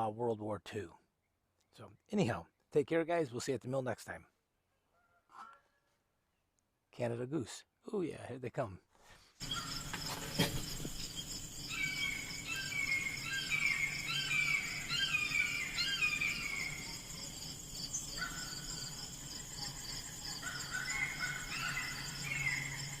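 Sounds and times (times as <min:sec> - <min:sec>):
high insect trill: 0:09.4 - 0:23.0.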